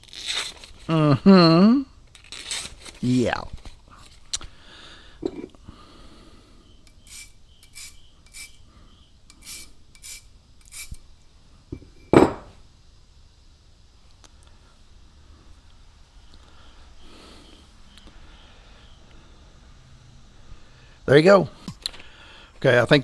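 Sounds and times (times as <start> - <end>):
blade sharpening strokes: 6.9 - 8.6, 9.3 - 11.0.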